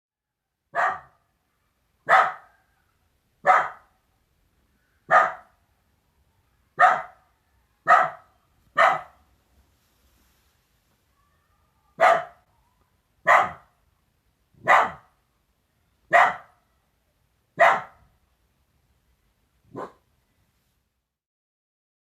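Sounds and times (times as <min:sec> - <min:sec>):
dog barking: 0:00.7 - 0:01.3, 0:02.0 - 0:02.8, 0:03.4 - 0:04.0, 0:05.0 - 0:05.6, 0:06.8 - 0:09.3, 0:11.9 - 0:12.5, 0:13.2 - 0:13.8, 0:14.6 - 0:15.2, 0:16.1 - 0:16.6, 0:17.6 - 0:18.1, 0:19.7 - 0:20.1.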